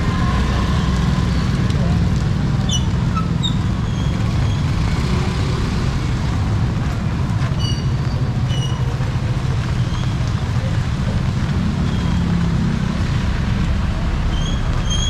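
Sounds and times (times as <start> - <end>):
low rumble of street noise: 0.0 - 15.0.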